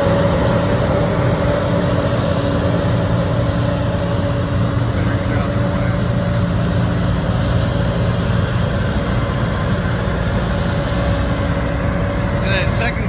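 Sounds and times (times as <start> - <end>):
combine harvester engine drone: 0.0 - 13.0
faint steady whine: 0.0 - 13.0.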